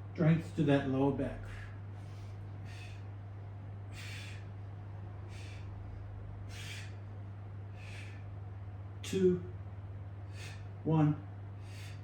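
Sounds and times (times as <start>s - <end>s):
low electrical hum: 0.0s - 12.0s
person breathing with effort: 1.5s - 8.5s, 10.2s - 10.8s, 11.6s - 12.0s.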